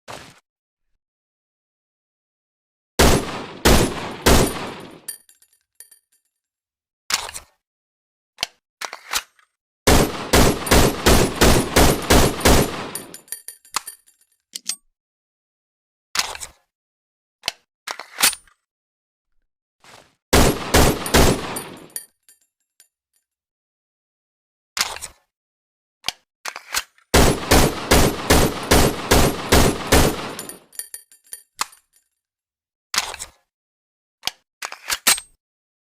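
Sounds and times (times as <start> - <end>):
pistol shots: 3.0 - 5.1, 9.9 - 13.1, 20.4 - 22.0, 27.2 - 30.6
metallic clinks: 11.6 - 14.2, 30.1 - 31.8.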